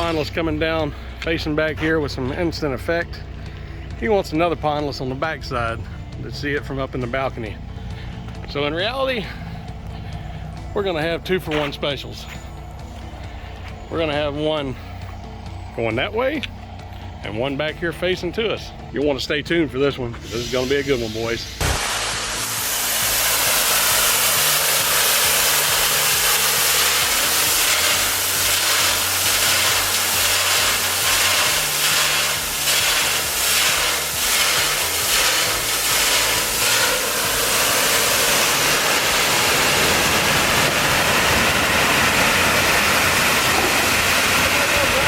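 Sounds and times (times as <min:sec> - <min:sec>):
waterfall rushing hiss: 0:00.0 - 0:00.2, 0:20.2 - 0:45.0.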